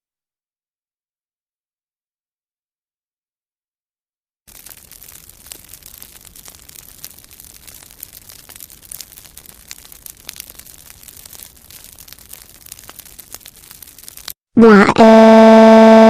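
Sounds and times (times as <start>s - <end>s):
fire crackling and popping: 4.5s - 14.5s.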